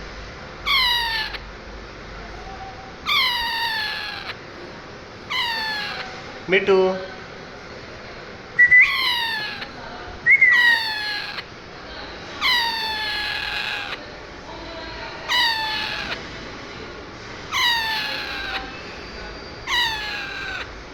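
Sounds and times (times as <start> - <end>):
parrot calling: 0.6 - 1.5, 2.9 - 6.2, 8.6 - 14.2, 15.2 - 16.3, 17.5 - 20.9.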